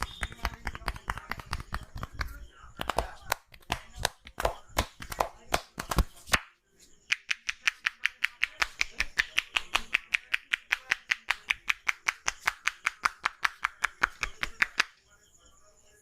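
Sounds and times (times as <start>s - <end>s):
hands tapping on head: 0.0s - 6.4s, 7.1s - 14.9s.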